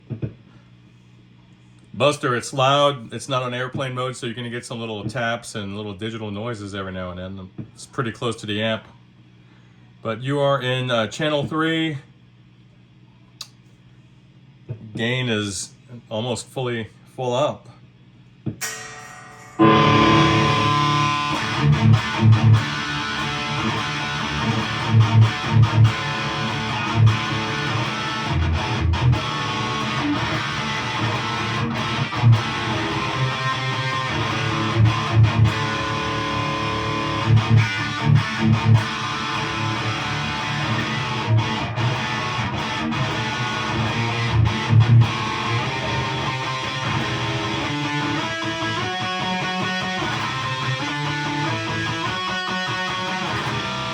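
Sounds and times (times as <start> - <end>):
distorted electric guitar: 18.6 - 53.9.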